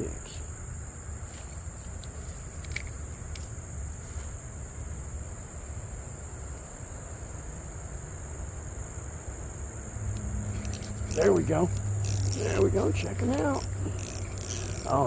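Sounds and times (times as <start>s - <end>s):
insects trilling: 0.0s - 15.0s
faint clicks: 10.1s - 15.0s.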